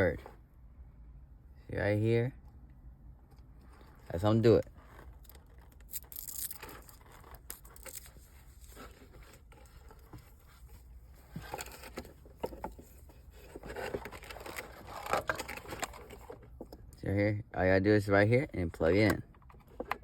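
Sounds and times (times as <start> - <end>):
keyboard rustling and scraping: 3.5 - 16.8.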